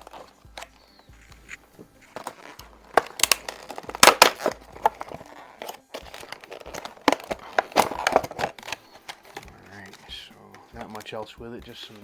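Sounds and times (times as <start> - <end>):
packaging being torn open: 2.2 - 10.1.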